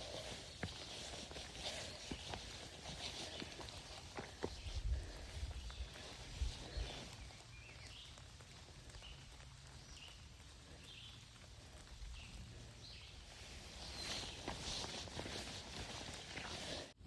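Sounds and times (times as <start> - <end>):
footsteps: 0.0 - 7.1, 13.6 - 17.0.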